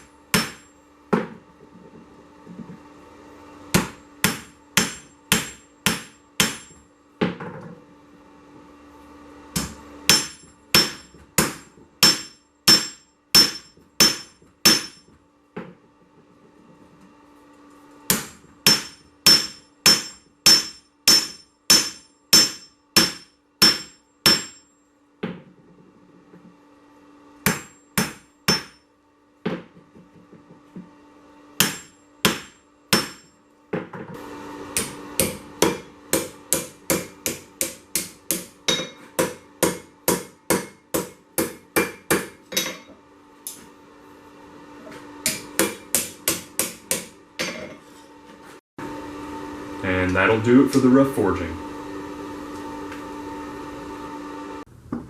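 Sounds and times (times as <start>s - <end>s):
hammer striking steel on anvil: 0.0s - 0.8s, 3.8s - 6.8s, 9.6s - 15.2s, 18.1s - 24.7s, 27.4s - 28.8s, 31.6s - 33.4s, 34.8s - 42.9s, 45.2s - 47.8s.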